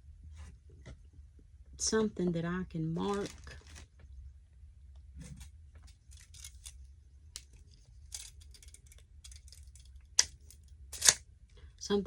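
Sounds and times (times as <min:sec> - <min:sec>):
rummaging through craft supplies: 0:02.9 - 0:04.1, 0:05.2 - 0:06.8.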